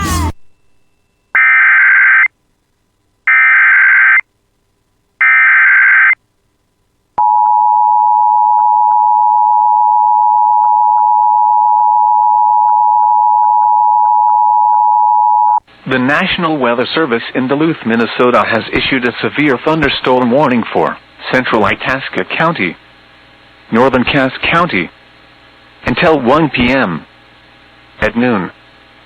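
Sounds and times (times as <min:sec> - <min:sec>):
loud steady alert tone: 0:00.0 - 0:01.8.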